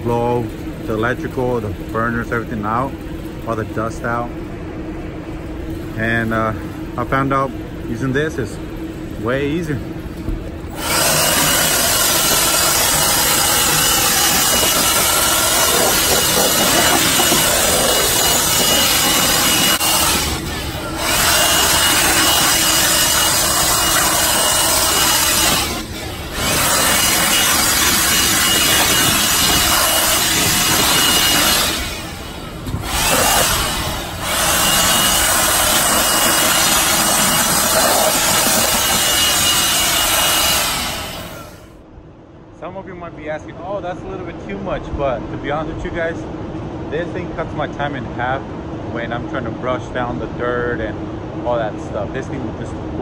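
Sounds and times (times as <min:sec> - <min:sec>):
blower rush of air: 0:00.0 - 0:41.9.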